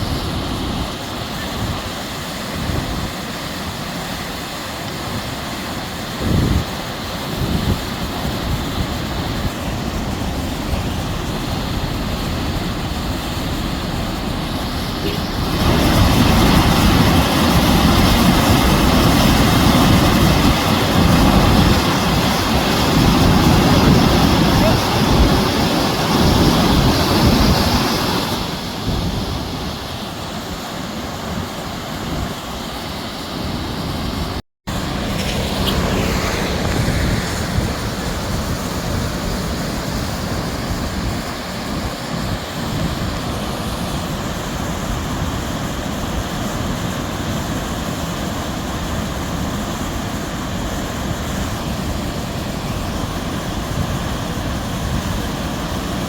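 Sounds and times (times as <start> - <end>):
wind: 0.0 - 56.0
heavy rain: 6.8 - 28.5.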